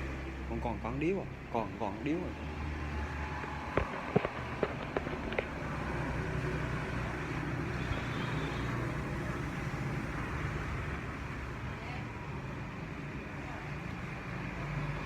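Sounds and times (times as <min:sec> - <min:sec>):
road and traffic noise: 0:00.0 - 0:15.0
vehicle engine running: 0:02.2 - 0:07.5.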